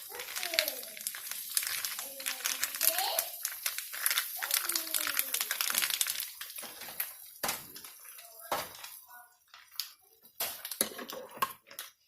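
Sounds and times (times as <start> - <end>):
dishes and utensils clinking: 10.2 - 12.0.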